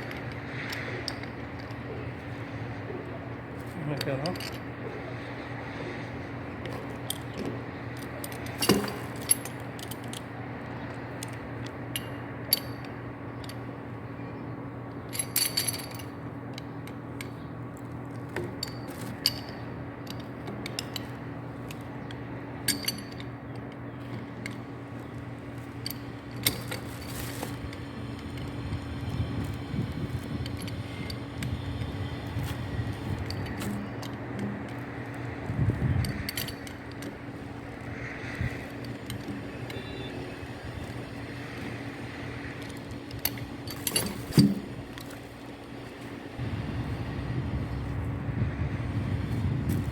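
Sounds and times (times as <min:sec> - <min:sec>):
steady low hum: 0:00.0 - 0:49.9
tools and pipe fittings clinking: 0:06.6 - 0:10.3, 0:15.1 - 0:17.4, 0:18.1 - 0:28.6, 0:29.4 - 0:35.3, 0:35.9 - 0:45.6
rubbing and handling noise: 0:23.9 - 0:46.3.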